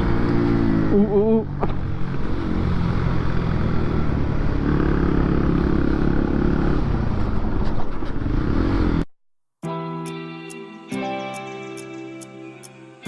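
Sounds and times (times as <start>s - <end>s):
motorcycle engine running: 0.0s - 9.1s.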